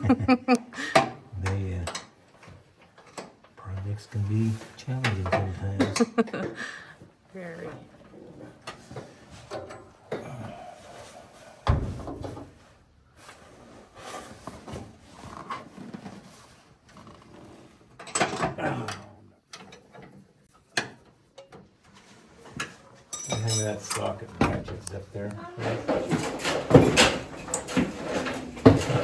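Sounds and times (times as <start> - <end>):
hand tools clinking on metal: 3.0 - 6.6, 22.6 - 29.0.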